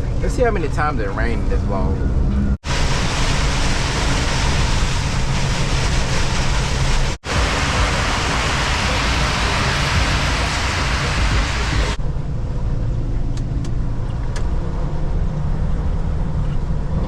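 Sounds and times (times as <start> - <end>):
road noise: 0.0 - 17.0
diesel engine drone: 1.9 - 16.7
heavy rain on truck cab: 2.6 - 12.0.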